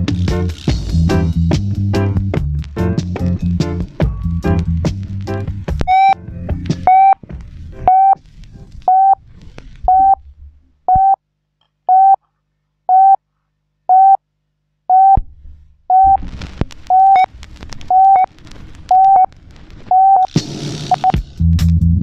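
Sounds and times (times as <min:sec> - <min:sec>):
reggae dub music: 0:00.0 - 0:07.2, 0:07.9 - 0:08.2, 0:19.9 - 0:22.0
short electronic beeps: 0:05.9 - 0:06.2, 0:06.9 - 0:07.2, 0:07.9 - 0:08.2, 0:08.9 - 0:09.2, 0:09.9 - 0:10.2, 0:10.9 - 0:11.2, 0:11.9 - 0:12.2, 0:12.9 - 0:13.2, 0:13.9 - 0:14.2, 0:14.9 - 0:15.2, 0:15.9 - 0:16.2, 0:16.9 - 0:17.3, 0:17.9 - 0:18.3, 0:18.9 - 0:19.3, 0:19.9 - 0:20.3, 0:20.9 - 0:21.2.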